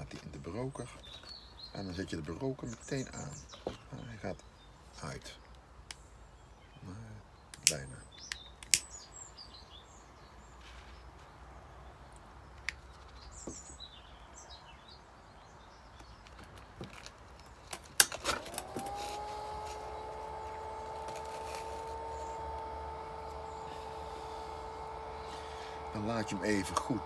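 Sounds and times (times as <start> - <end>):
sharp switch click: 7.6 - 9.0
two-tone fan hum: 18.0 - 27.0.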